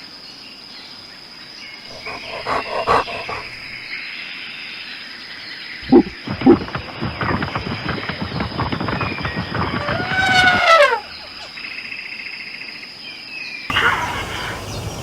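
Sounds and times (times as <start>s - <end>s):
short rough animal calls: 1.9s - 3.9s.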